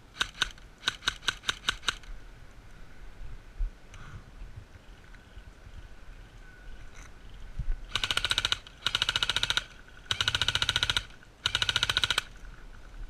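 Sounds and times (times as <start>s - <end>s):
airsoft rifle firing bursts: 0.1s - 2.1s, 7.9s - 12.4s.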